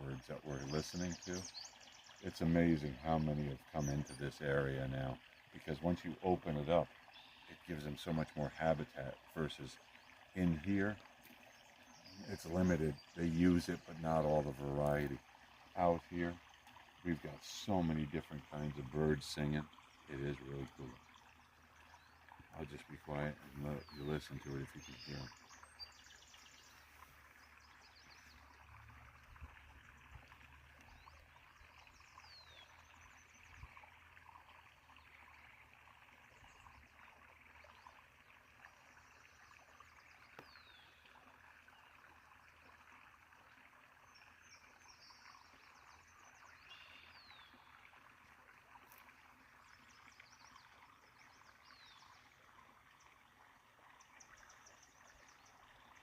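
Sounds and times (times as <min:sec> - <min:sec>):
stream water rushing: 0:00.0 - 0:38.2
songbirds chirping and trilling: 0:00.0 - 0:56.0.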